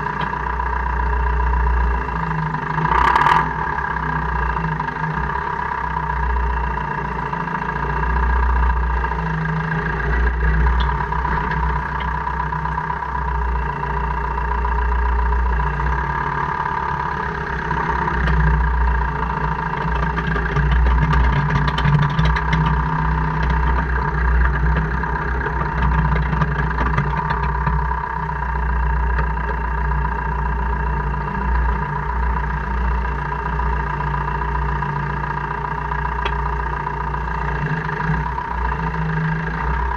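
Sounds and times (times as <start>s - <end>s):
car engine rumble: 0.0s - 39.9s.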